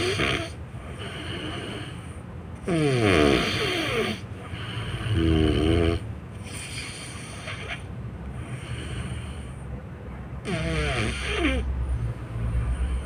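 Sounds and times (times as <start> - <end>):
person snoring: 0.0 - 2.0, 2.6 - 7.8, 10.4 - 11.7
person breathing: 4.4 - 5.4, 6.4 - 9.8, 12.5 - 13.0.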